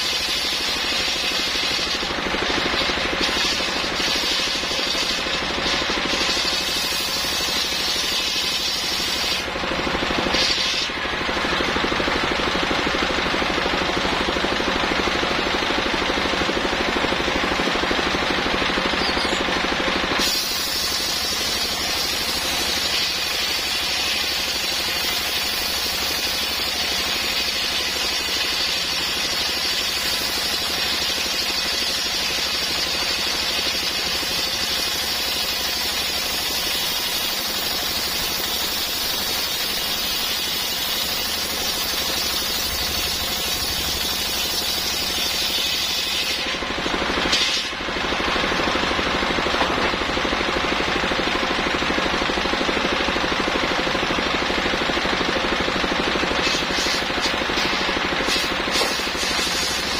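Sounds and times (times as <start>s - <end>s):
circular saw cutting wood: 0.0s - 11.6s, 18.2s - 47.8s, 56.2s - 59.9s.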